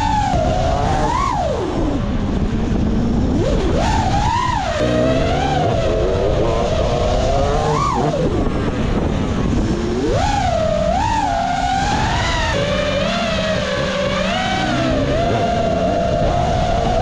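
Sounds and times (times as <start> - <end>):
wind noise: 0.0 - 17.0
drone motors whining: 4.8 - 8.6.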